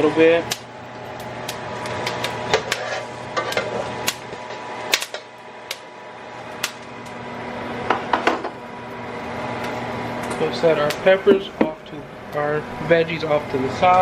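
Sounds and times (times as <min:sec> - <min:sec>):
peppers sizzling in a skillet: 0:00.0 - 0:07.2
kitchen fan humming: 0:00.0 - 0:14.0
sharp pops and crackles: 0:00.5 - 0:02.8, 0:03.5 - 0:05.9, 0:06.5 - 0:07.2.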